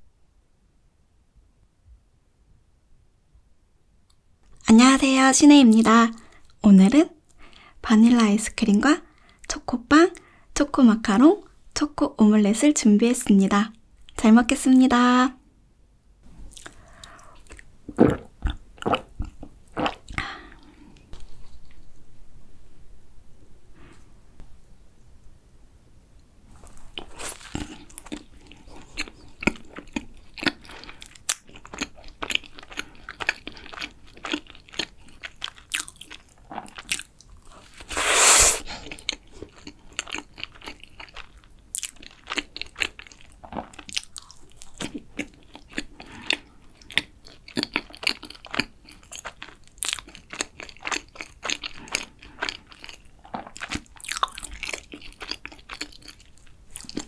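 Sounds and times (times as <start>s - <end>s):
wet chewing: 26.7s - 57.0s.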